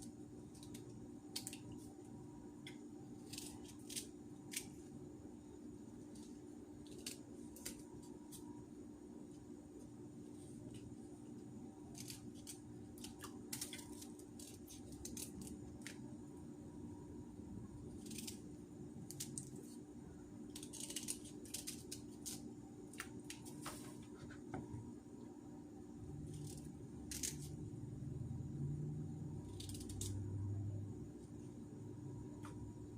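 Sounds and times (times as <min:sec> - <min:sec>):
steady low hum: 0:00.0 - 0:32.9
knife cutting ginger root: 0:29.4 - 0:30.6.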